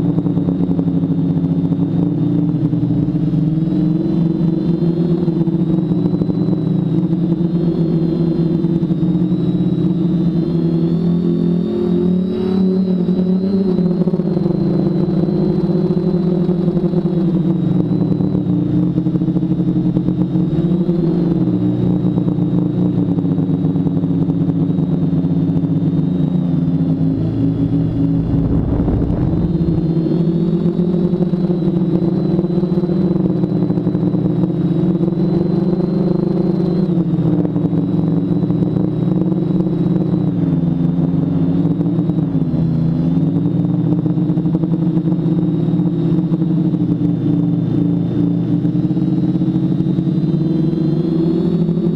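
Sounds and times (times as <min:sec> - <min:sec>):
drone motors humming: 0:26.5 - 0:32.0
low rumble: 0:27.2 - 0:30.7.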